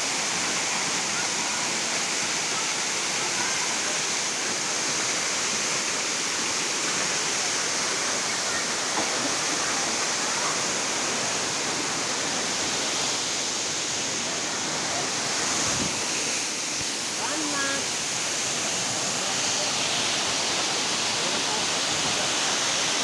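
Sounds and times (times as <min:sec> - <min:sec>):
waterfall pouring: 0:00.0 - 0:23.0.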